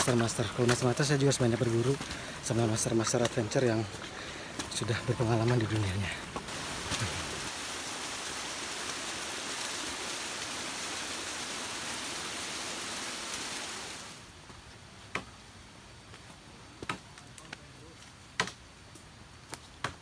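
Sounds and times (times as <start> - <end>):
flowing water rushing: 0.0 - 14.3.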